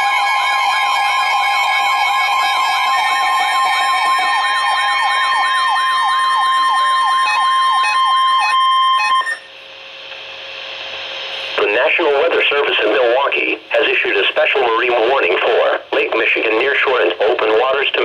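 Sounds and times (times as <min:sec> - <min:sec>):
high-pitched warning tone: 0:00.0 - 0:09.6
siren-like alarm: 0:00.0 - 0:09.6
faint radio hiss: 0:09.9 - 0:18.0.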